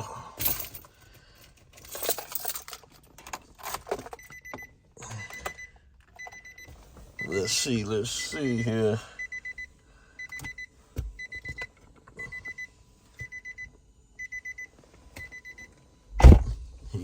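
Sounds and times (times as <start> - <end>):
car door warning chime beeping: 4.2 - 16.4
car door slamming: 16.2 - 16.7.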